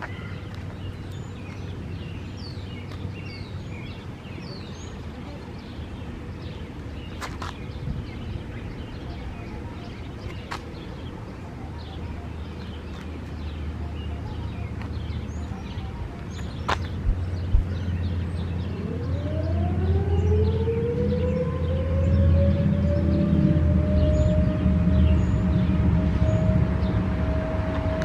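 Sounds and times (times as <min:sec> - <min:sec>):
small birds chirping: 0:00.0 - 0:23.2
warning siren winding up: 0:18.8 - 0:24.6.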